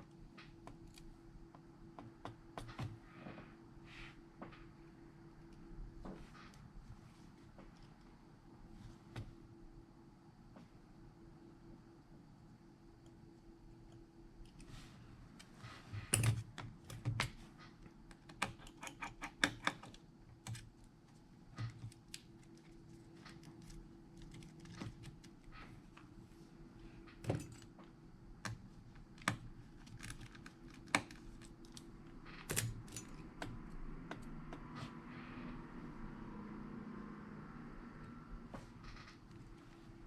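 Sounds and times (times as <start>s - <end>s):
faint steady hum: 0.0s - 40.0s.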